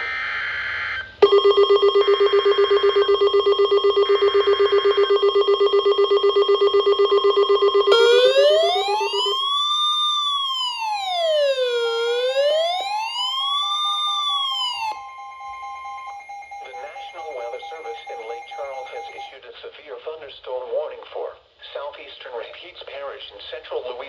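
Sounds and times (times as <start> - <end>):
wailing siren: 0.0 - 19.3
pulsing alarm tone: 0.8 - 19.3.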